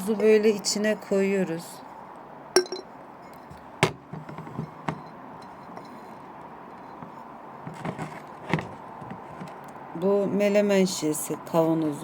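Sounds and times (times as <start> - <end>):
glass jar clicks and knocks: 2.6 - 6.0.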